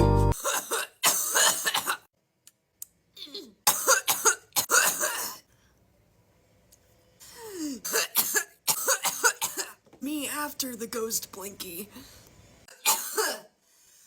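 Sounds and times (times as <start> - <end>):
woman coughing hard: 0.4 - 2.1, 3.2 - 5.4, 7.7 - 9.8, 12.7 - 13.6.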